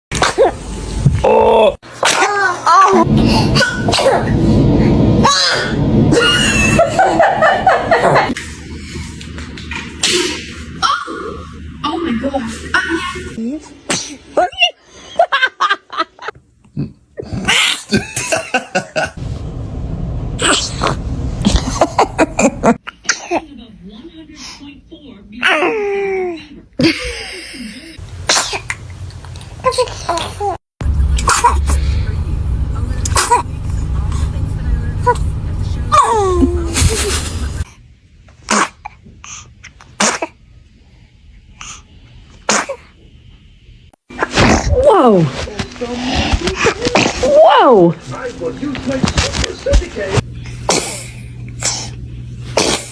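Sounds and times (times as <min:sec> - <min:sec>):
baby sneezing: 0:03.5 - 0:04.3, 0:13.9 - 0:14.3, 0:20.4 - 0:21.7, 0:28.3 - 0:28.8, 0:38.4 - 0:39.0, 0:40.0 - 0:40.4, 0:42.4 - 0:42.9, 0:50.6 - 0:51.9, 0:52.5 - 0:52.9.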